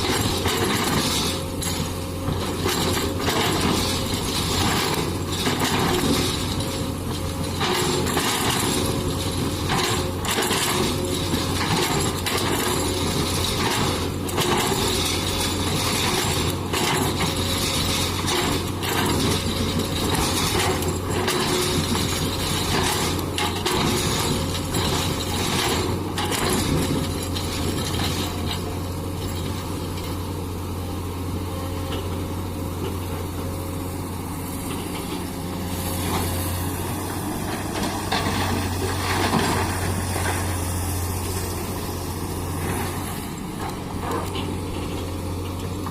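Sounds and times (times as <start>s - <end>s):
diesel engine droning: 26.0s - 45.9s.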